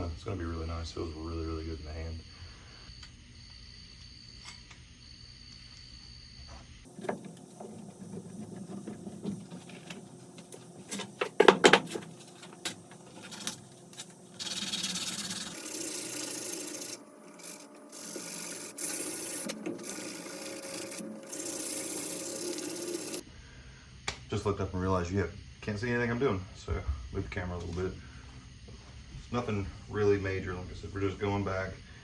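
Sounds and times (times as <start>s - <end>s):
handling knocks and clatter: 6.9s - 14.2s
sandpaper rasping on wood: 14.4s - 23.2s.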